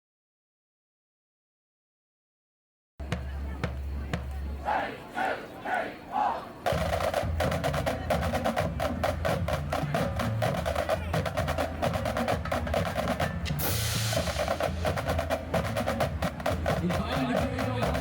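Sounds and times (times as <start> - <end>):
marching drumline playing: 3.0 - 18.0
cymbal crash: 13.5 - 15.0.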